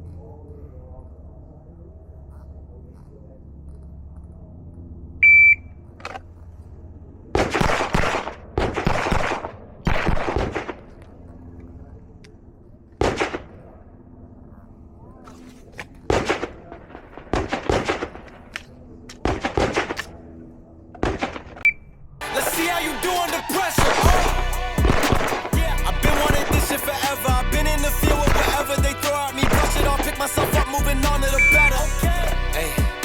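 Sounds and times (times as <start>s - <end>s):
shot timer beep: 5.2s - 5.7s, 31.4s - 31.7s
pistol shots: 7.4s - 11.0s, 13.0s - 13.6s, 16.1s - 18.5s, 19.2s - 20.2s, 23.8s - 26.8s, 28.2s - 30.7s.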